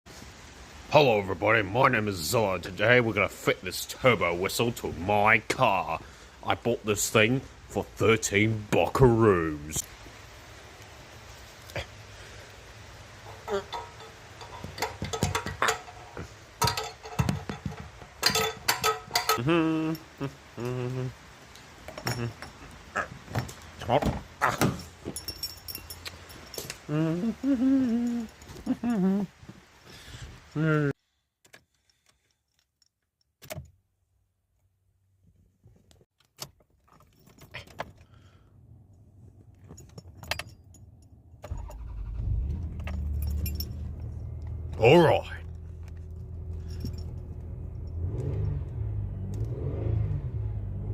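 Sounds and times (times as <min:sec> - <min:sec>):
metal parts clinking: 0:13.3 - 0:20.1, 0:24.6 - 0:26.9, 0:42.8 - 0:44.4, 0:45.9 - 0:48.0
keys jingling: 0:13.7 - 0:20.1, 0:24.6 - 0:26.9, 0:42.7 - 0:44.4, 0:46.2 - 0:48.4
car engine starting and idling: 0:41.4 - 0:50.9.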